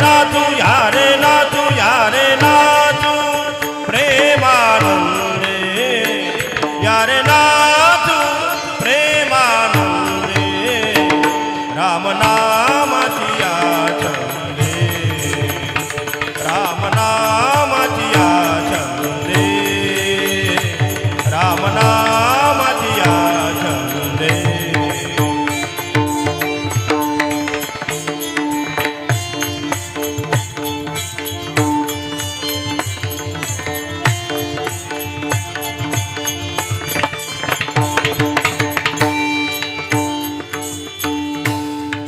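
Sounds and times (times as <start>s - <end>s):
hand drum beat: 9.7s - 11.4s, 13.4s - 42.0s.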